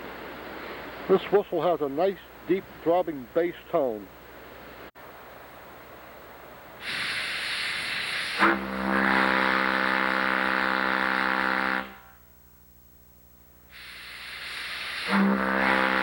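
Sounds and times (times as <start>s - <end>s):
air hissing: 6.8s - 8.7s, 13.7s - 16.0s
deep steam whistle tone: 6.8s - 12.2s, 13.7s - 16.0s.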